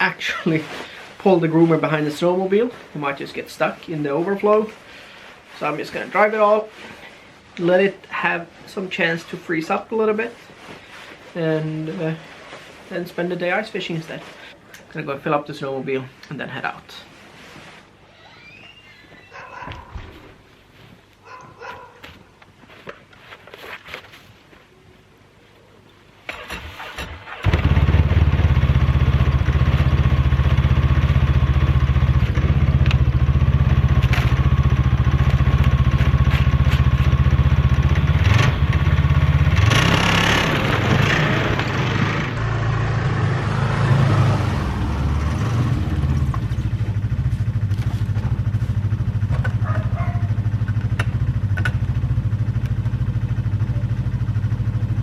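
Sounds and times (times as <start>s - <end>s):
snowmobile engine running: 27.5s - 49.0s.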